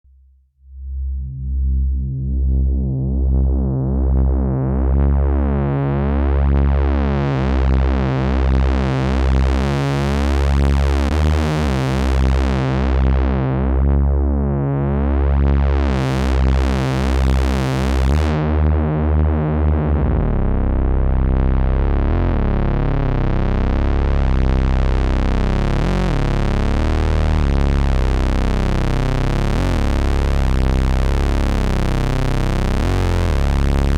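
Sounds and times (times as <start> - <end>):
sustained low synth drone: 0.6 - 33.9
synthesizer bass line: 0.8 - 33.9.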